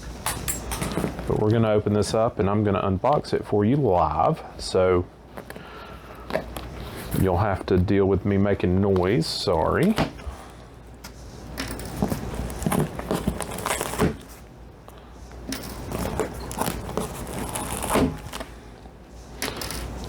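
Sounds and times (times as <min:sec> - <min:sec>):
cardboard box being torn open: 0:16.2 - 0:18.4.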